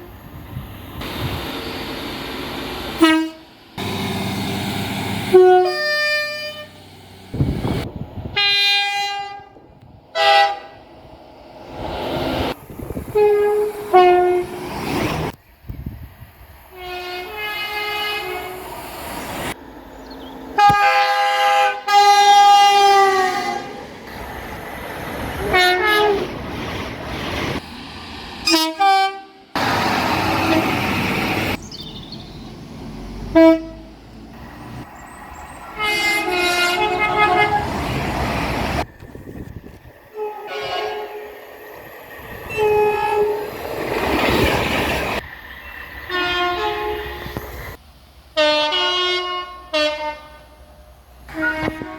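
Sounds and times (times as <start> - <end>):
rumble of passing trains: 0.0 - 51.9
train horns: 3.0 - 4.4, 5.2 - 6.8, 7.4 - 10.9, 13.1 - 14.6, 16.7 - 18.7, 20.5 - 23.9, 25.4 - 26.4, 28.4 - 31.6, 33.2 - 34.0, 35.6 - 38.1, 40.1 - 41.5, 42.4 - 43.6, 46.0 - 47.5, 48.4 - 51.9.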